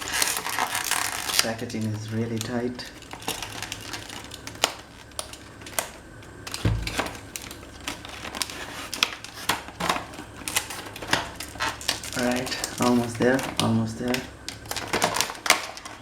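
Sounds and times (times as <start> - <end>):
packaging clicks and snaps: 0.0 - 16.0
dull thump: 6.6 - 7.2.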